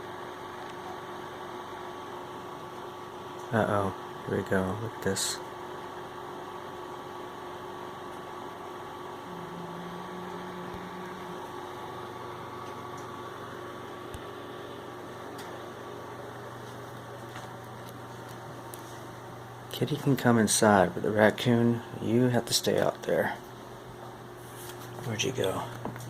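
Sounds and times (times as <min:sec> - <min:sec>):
electrical hum: 0:00.0 - 0:26.0
low tone: 0:09.1 - 0:13.2.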